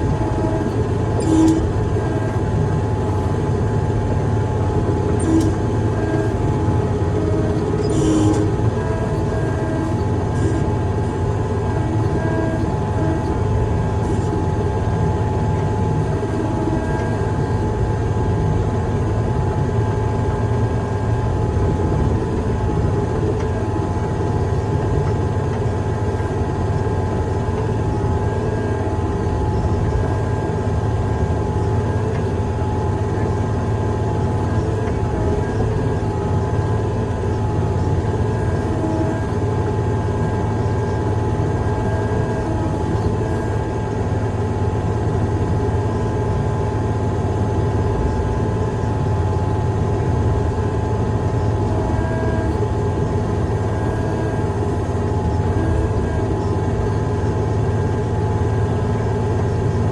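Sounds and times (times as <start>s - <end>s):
faint whining tones: 0.0s - 59.9s
heavy machine engine drone: 0.0s - 59.9s.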